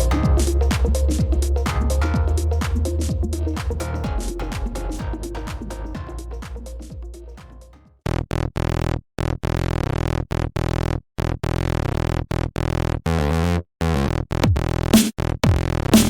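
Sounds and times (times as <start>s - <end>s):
electronic music: 0.0s - 7.8s, 14.4s - 16.0s
synthesizer with stuttering beat: 0.0s - 10.8s, 14.4s - 16.0s.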